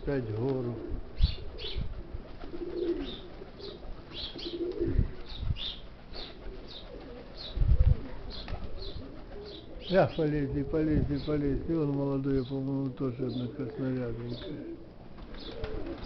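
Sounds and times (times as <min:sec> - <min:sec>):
pigeons cooing: 0:00.0 - 0:16.0
wind rumble on microphone: 0:00.9 - 0:02.2, 0:04.8 - 0:05.8, 0:07.4 - 0:09.1, 0:10.4 - 0:11.8
small bird chirping: 0:02.8 - 0:04.7.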